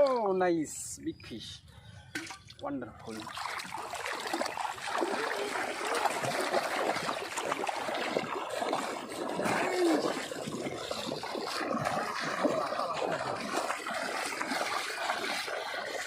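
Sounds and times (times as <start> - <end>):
shallow water splashing: 2.1 - 16.0.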